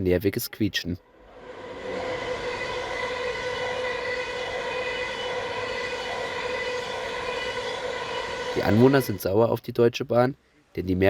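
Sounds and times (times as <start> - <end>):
train rolling rumble: 1.2 - 9.4
train wheels squealing on rails: 1.3 - 9.4.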